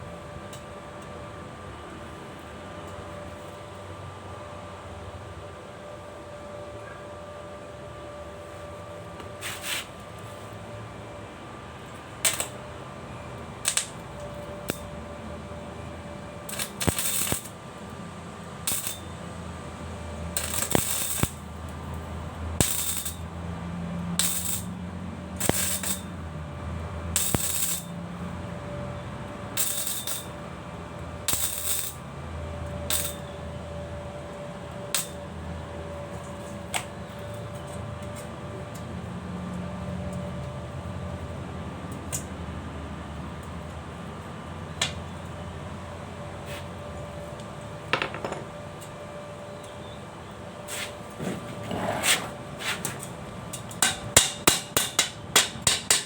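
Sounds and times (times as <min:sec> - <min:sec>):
welding arc bursts: 0:16.4 - 0:17.6, 0:18.6 - 0:19.1, 0:20.3 - 0:21.6, 0:22.6 - 0:23.3, 0:24.2 - 0:24.8, 0:25.4 - 0:26.1, 0:27.2 - 0:27.9, 0:29.6 - 0:30.3, 0:31.3 - 0:32.0, 0:32.9 - 0:33.2.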